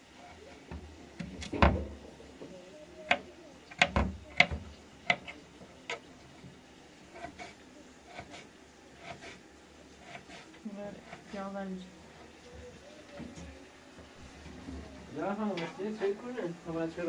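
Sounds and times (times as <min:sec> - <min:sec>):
sharp clicks and knocks: 0:03.1 - 0:06.1.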